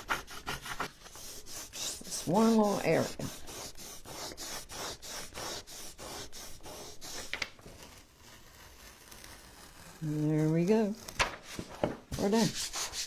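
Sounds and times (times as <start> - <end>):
rubbing strokes on wood: 0.0 - 7.4, 11.6 - 13.0.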